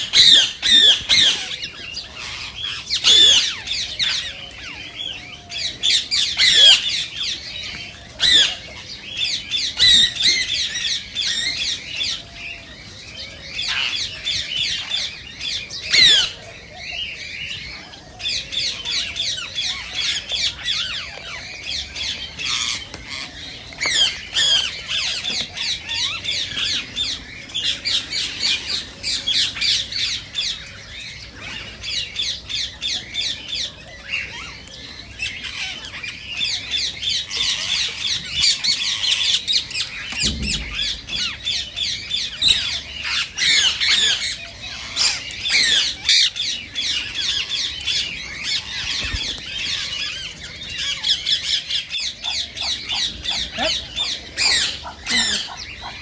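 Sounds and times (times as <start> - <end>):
parakeets calling shrilly: 0.0 - 8.8, 9.4 - 12.0, 13.6 - 16.4, 18.7 - 56.0
short low bump: 40.1 - 42.3.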